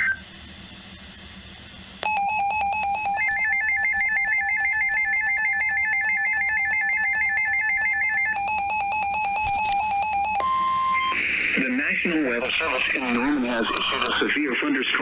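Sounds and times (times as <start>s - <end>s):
warbling electronic alert tone: 0.0s - 0.3s, 2.0s - 11.2s.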